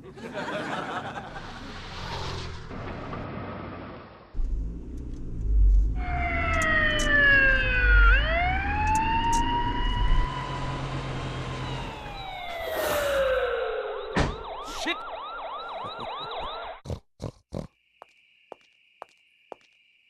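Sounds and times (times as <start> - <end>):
car rumbling: 1.2 - 12.3
police siren wailing: 5.9 - 16.8.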